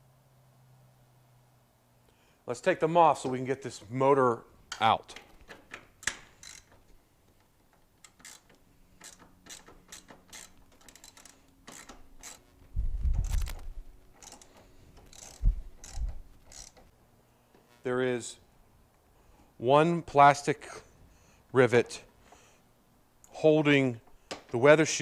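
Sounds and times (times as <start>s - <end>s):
ratchet wrench clicking: 5.7s - 6.8s, 8.0s - 12.5s, 14.2s - 16.9s.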